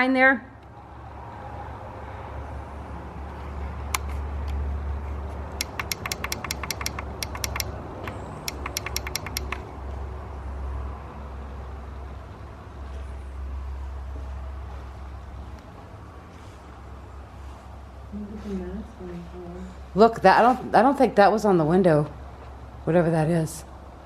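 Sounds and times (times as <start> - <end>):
sharp clicks and ticks: 3.9 - 4.6, 5.5 - 9.7.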